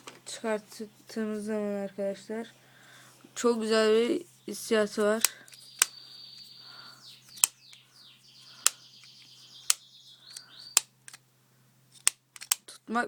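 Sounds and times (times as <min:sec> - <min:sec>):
plastic clicks: 0:04.9 - 0:06.5, 0:07.2 - 0:07.9, 0:08.6 - 0:11.2, 0:11.9 - 0:12.8.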